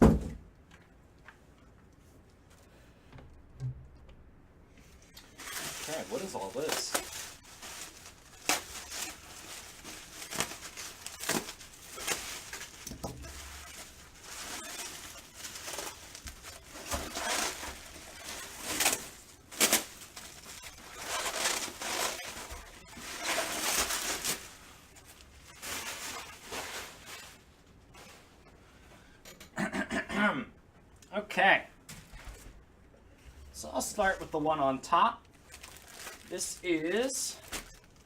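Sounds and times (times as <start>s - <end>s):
packaging rustling and crinkling: 4.8s - 28.4s, 35.2s - 38.0s.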